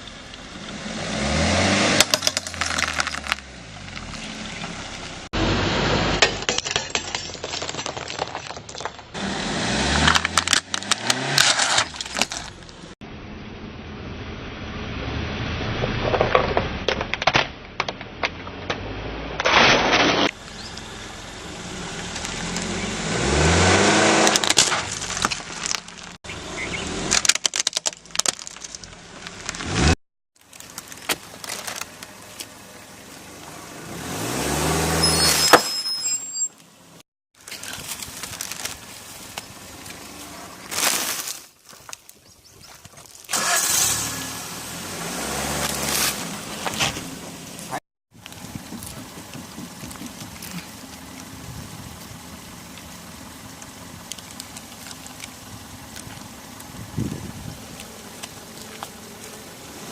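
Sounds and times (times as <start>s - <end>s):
car engine revving: 0.5s - 6.2s, 9.2s - 12.6s, 20.4s - 27.2s, 32.6s - 35.5s, 43.3s - 59.9s
objects cracking under tyres: 1.9s - 5.3s, 6.2s - 9.2s, 9.8s - 13.0s, 23.7s - 33.3s, 37.4s - 44.2s, 45.4s - 59.9s.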